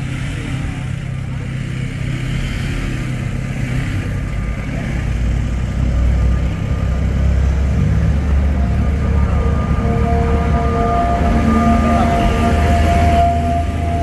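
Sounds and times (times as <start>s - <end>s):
vehicle engine rumble: 0.0s - 14.0s.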